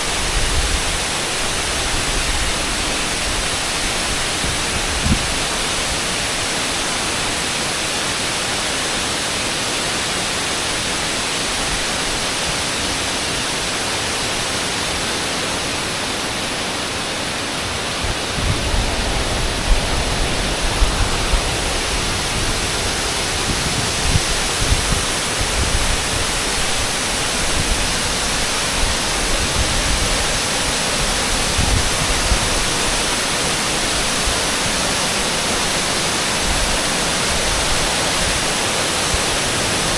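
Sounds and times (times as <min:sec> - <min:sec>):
waterfall rushing: 0:00.0 - 0:39.9
low rumbling bumps: 0:18.0 - 0:25.8.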